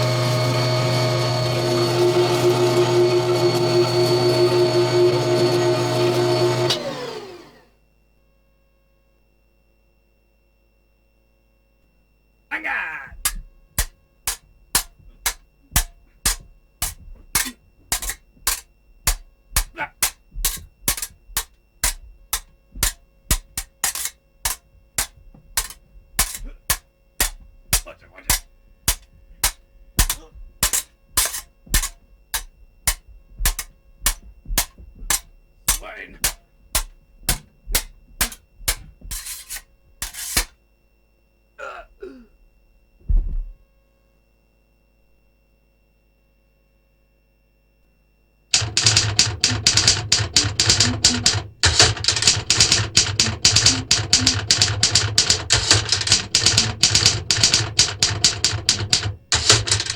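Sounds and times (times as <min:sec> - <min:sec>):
sharp clicks or knocks: 0:13.1 - 0:40.6, 0:48.5 - 0:59.9
loud thump: 0:43.1 - 0:43.6.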